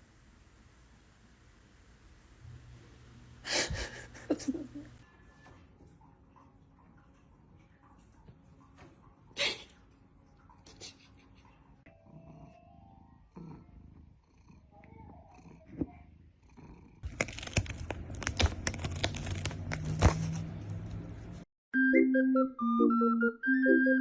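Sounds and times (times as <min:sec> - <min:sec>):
cat purring: 0:11.6 - 0:17.1.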